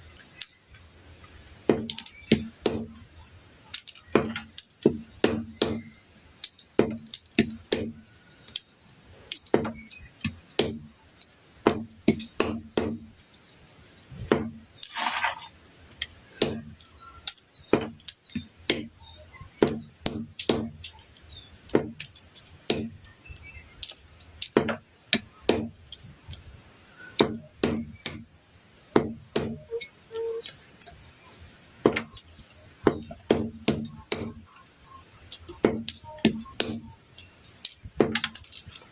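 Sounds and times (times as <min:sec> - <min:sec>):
faint birds chirping: 0:00.0 - 0:38.9
knife chopping on a board: 0:04.2 - 0:06.0, 0:10.6 - 0:10.9, 0:11.7 - 0:13.1, 0:19.6 - 0:20.8, 0:25.5 - 0:25.8, 0:27.2 - 0:28.3, 0:29.0 - 0:29.6, 0:32.9 - 0:34.4.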